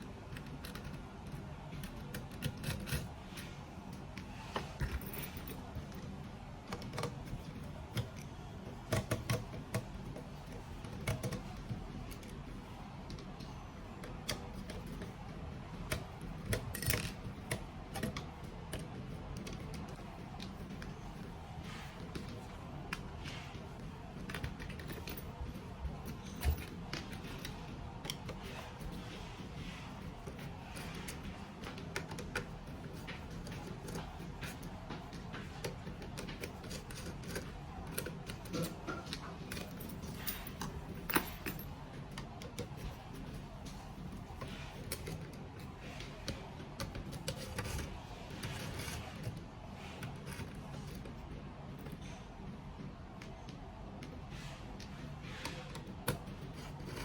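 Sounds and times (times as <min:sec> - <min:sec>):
steady low hum: 0:00.0 - 0:57.0
screwdriver clicks and taps: 0:08.9 - 0:12.3.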